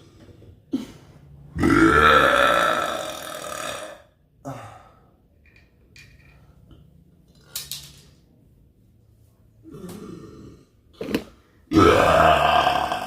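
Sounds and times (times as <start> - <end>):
person burping loudly: 1.6 - 4.6, 11.7 - 13.0.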